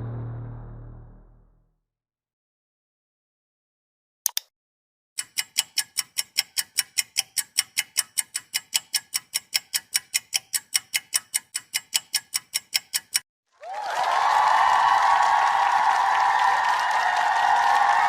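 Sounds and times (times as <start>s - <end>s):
rapid clock ticking: 5.2s - 13.3s.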